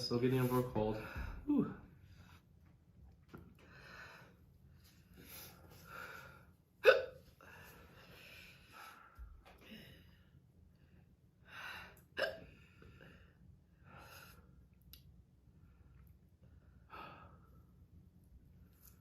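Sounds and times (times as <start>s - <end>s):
woman hiccuping: 6.8s - 7.2s, 12.2s - 12.4s.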